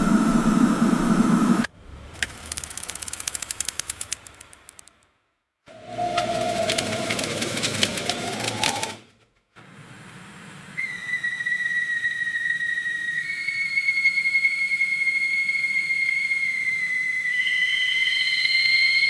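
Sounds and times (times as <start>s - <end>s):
high whistling tone: 0.0s - 1.7s, 5.7s - 9.0s, 10.6s - 19.0s
hiss: 0.0s - 1.7s.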